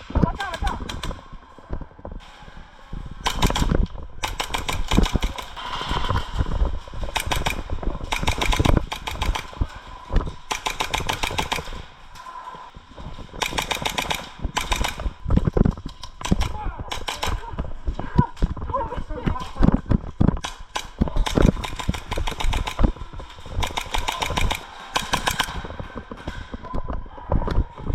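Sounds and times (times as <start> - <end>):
airsoft guns firing bursts: 3.2 - 12.0, 13.1 - 17.6, 20.4 - 26.4.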